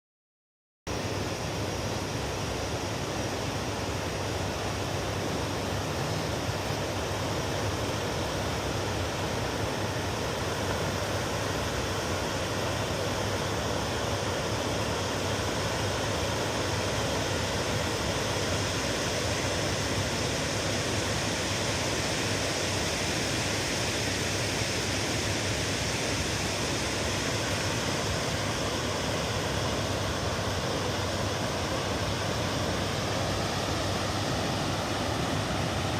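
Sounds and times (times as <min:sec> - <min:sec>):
wind on shore: 0:00.9 - 0:35.9
sea surf roaring: 0:01.0 - 0:35.9.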